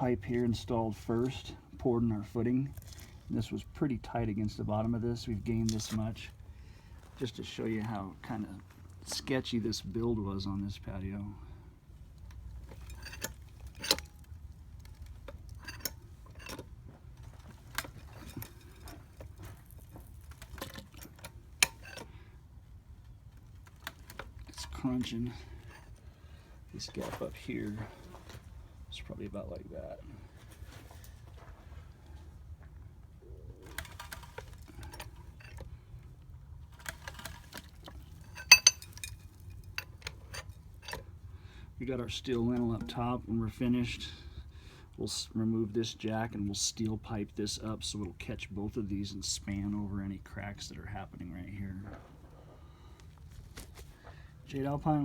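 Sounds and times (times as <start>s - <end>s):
structure crunching and cracking: 12.2s - 22.2s, 33.5s - 35.6s, 36.6s - 40.8s
light metallic clinks: 12.6s - 22.1s, 36.8s - 41.1s.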